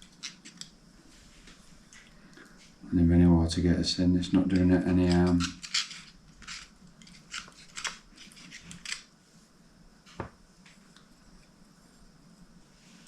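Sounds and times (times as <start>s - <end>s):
metal parts clicking and scraping: 0.0s - 0.7s, 4.5s - 9.1s.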